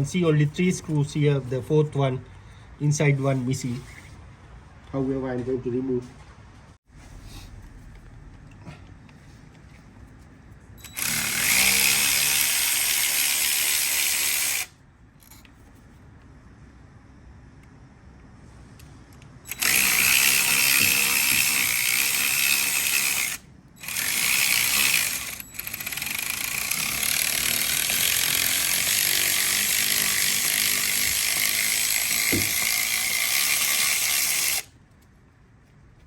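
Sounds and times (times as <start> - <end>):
power tool running: 10.8 - 14.7, 19.5 - 34.7.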